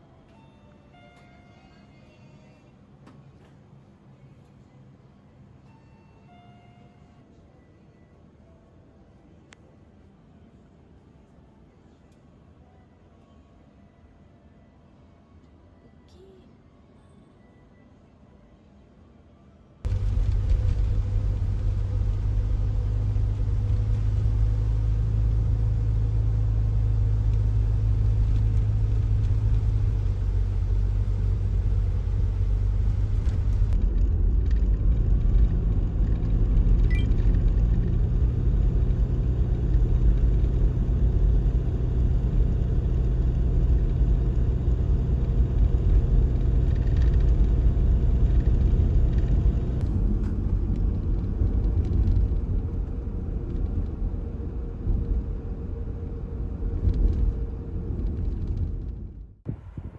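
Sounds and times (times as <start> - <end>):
vehicle engine and road rumble: 19.8 - 59.9.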